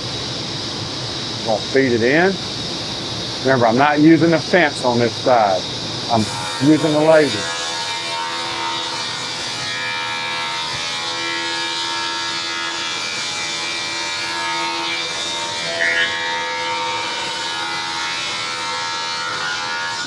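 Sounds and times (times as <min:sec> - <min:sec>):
rip saw cutting wood: 0:06.2 - 0:11.3.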